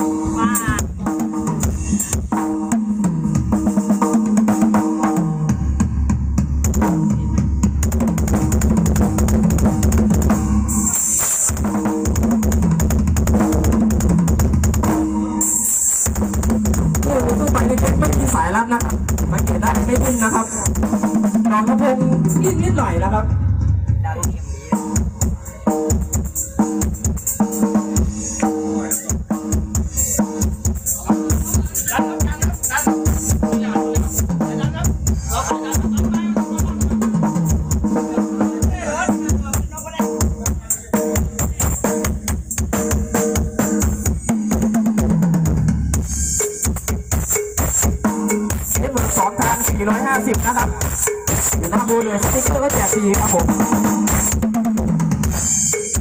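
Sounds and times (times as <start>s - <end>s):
drum-heavy music with deep bass: 0.0s - 56.0s
repeating melodic line: 21.5s - 25.0s, 47.3s - 53.7s.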